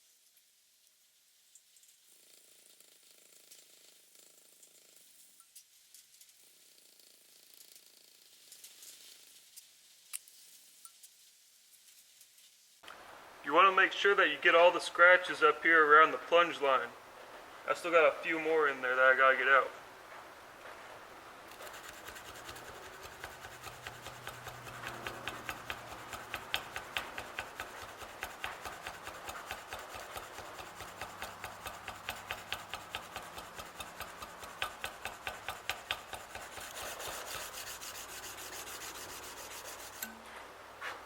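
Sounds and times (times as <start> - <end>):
sandpaper rubbing on steel blade: 21.5 - 40.2.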